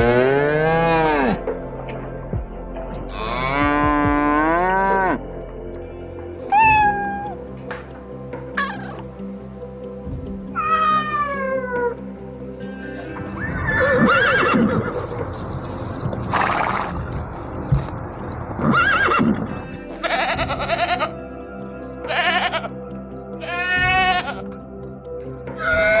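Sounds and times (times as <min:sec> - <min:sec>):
background music: 0:00.0 - 0:26.0
animal calls: 0:06.5 - 0:07.4, 0:08.6 - 0:09.1, 0:10.6 - 0:12.0, 0:13.0 - 0:21.1, 0:25.6 - 0:26.0.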